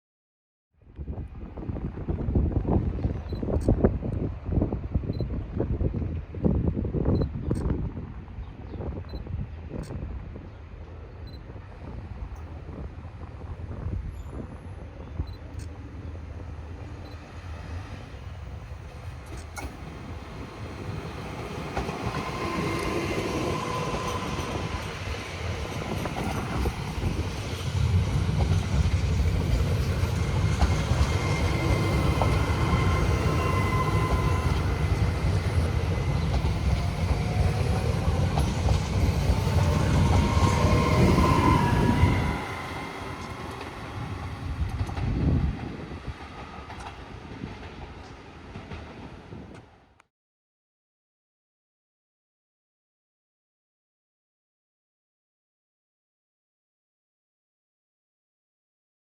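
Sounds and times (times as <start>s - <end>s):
train rumbling past: 9.5s - 50.0s
high wheel squeal: 30.5s - 36.7s, 39.6s - 44.1s.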